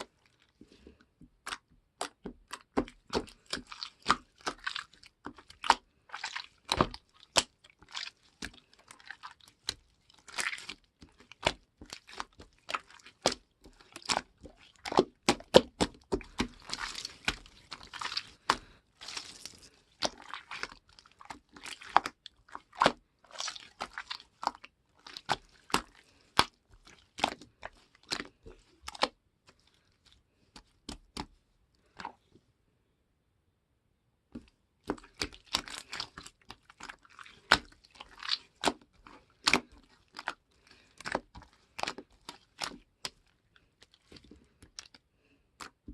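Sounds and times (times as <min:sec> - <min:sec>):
slime squished by hand: 0:00.0 - 0:32.2, 0:34.4 - 0:45.9.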